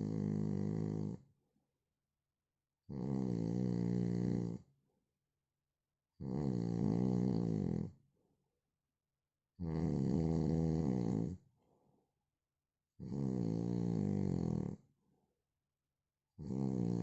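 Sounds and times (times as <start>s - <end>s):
man snoring: 0.0s - 1.2s, 2.9s - 4.6s, 6.2s - 7.9s, 9.6s - 11.4s, 13.0s - 14.8s, 16.4s - 17.0s.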